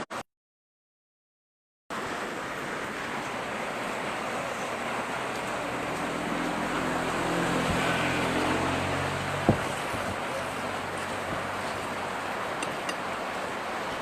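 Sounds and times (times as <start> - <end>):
vehicle engine hum: 1.9 - 14.0
wind and road rush: 2.0 - 14.0.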